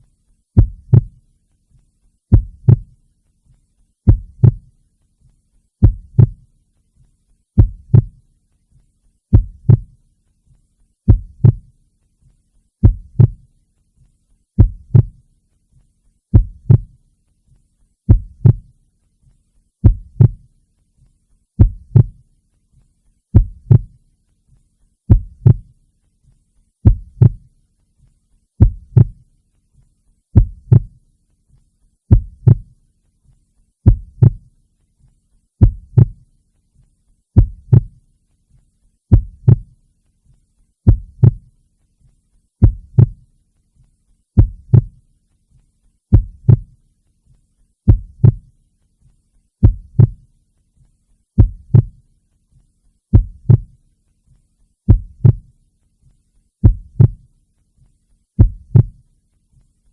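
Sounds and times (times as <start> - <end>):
heartbeat lub-dub: 0.5 - 8.4, 9.3 - 17.1, 18.1 - 20.6, 21.6 - 24.0, 25.1 - 25.8, 26.8 - 27.6, 28.6 - 29.3, 30.3 - 31.1, 32.1 - 32.8, 33.8 - 34.6, 35.6 - 36.3, 37.4 - 38.1, 39.1 - 39.8, 40.8 - 41.6, 42.6 - 43.3, 44.4 - 45.1, 46.1 - 46.8, 47.8 - 48.6, 49.6 - 50.3, 51.4 - 52.0, 53.1 - 53.8, 54.9 - 55.6, 56.6 - 57.3, 58.4 - 59.1.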